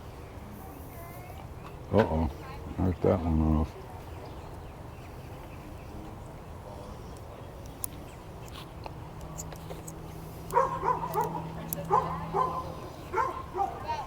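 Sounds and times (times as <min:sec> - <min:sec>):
small dog yapping: 0:10.5 - 0:14.0.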